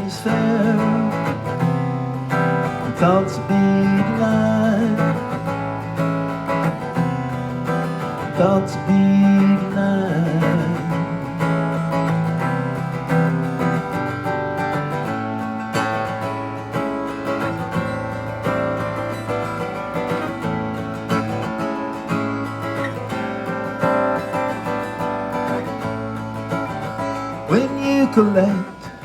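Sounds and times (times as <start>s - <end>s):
acoustic guitar strumming chords: 0.0s - 29.0s.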